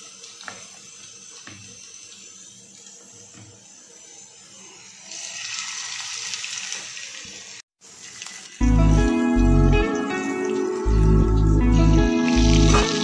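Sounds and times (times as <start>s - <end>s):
chicken sizzling in oil: 0.0s - 9.2s, 9.8s - 13.0s.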